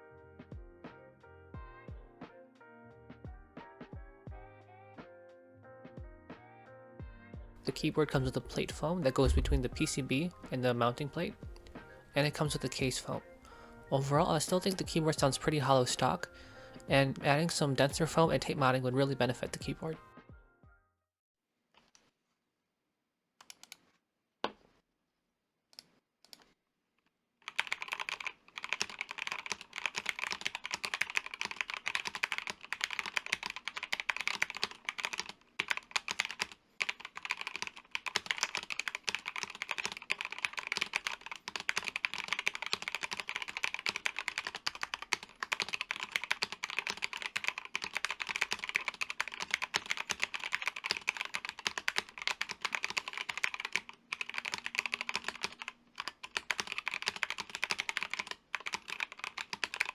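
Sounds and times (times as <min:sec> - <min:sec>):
mechanical keyboard typing: 0:07.7 - 0:11.0, 0:27.4 - 0:59.9.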